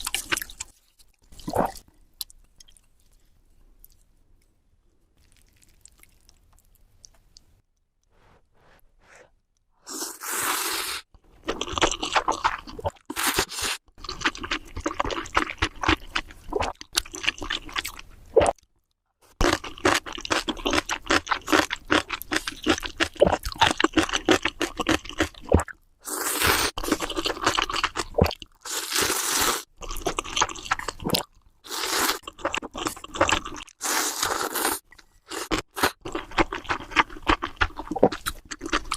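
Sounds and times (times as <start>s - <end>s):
crunching and chewing food: 5.2s - 7.5s, 11.4s - 18.7s, 19.4s - 25.8s, 26.6s - 38.9s.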